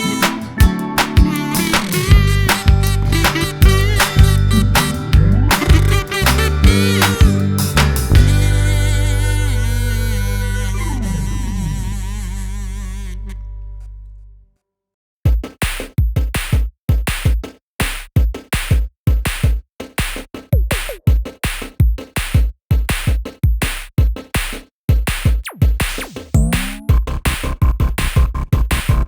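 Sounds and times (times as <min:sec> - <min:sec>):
electronic track with drum-machine beat: 0:00.0 - 0:09.0, 0:15.3 - 0:29.0
held electronic tone: 0:00.0 - 0:13.3.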